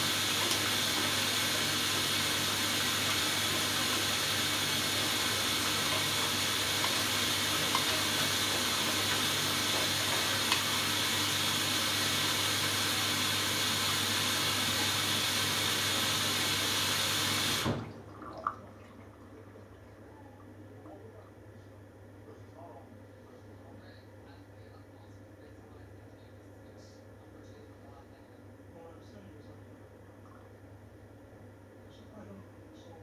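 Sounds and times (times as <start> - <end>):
water rushing into washing machine: 0.0 - 20.1.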